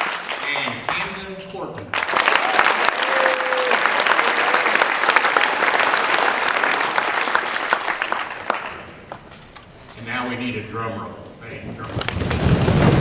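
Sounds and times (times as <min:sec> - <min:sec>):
audience applauding: 0:00.0 - 0:09.3.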